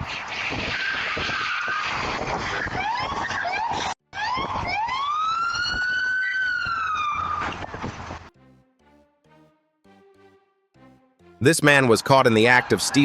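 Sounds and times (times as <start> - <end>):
emergency vehicle siren: 0.0 - 8.4.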